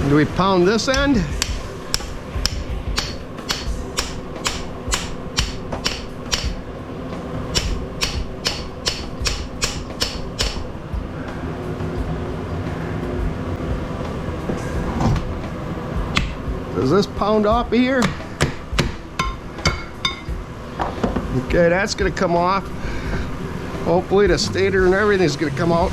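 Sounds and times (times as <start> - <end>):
hammer blows on metal: 0.9 - 6.7, 7.5 - 10.8.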